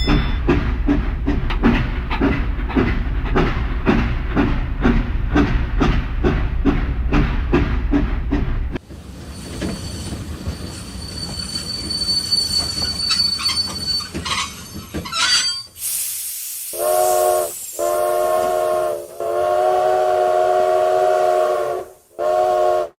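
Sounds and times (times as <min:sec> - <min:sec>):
train rolling rumble: 0:00.0 - 0:22.9
train chugging: 0:00.0 - 0:23.0
high squeal: 0:09.3 - 0:15.9
burst of hiss: 0:15.8 - 0:22.8
train horn blasts: 0:16.8 - 0:23.0.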